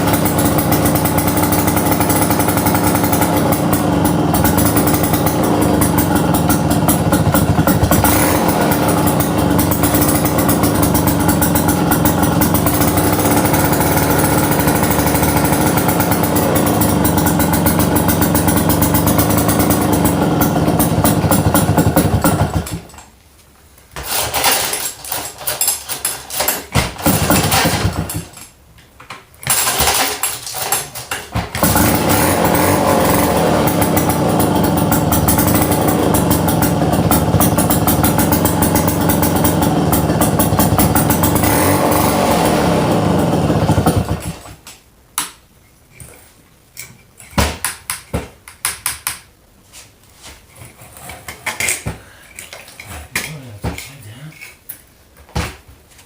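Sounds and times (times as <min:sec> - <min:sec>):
chainsaw engine running: 0:00.0 - 0:22.8, 0:27.0 - 0:28.3, 0:31.6 - 0:44.5.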